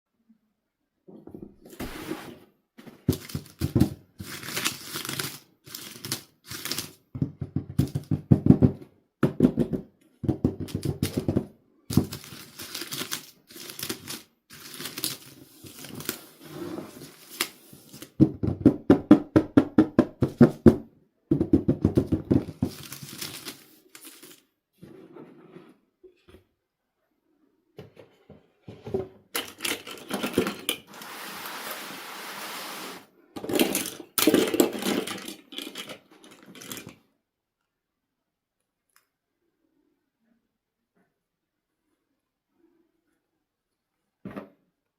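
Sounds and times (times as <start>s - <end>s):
plastic and cardboard crinkling: 2.8s - 7.0s, 10.7s - 18.2s, 22.0s - 24.5s, 33.6s - 37.0s.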